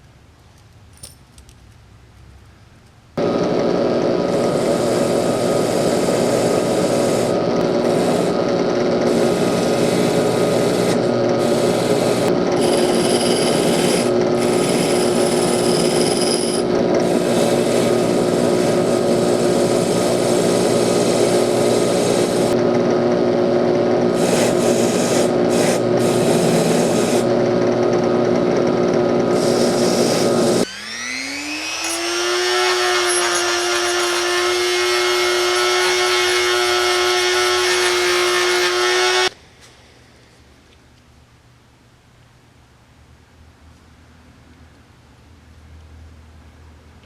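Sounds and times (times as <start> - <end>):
electric power tool running: 3.2 - 39.3.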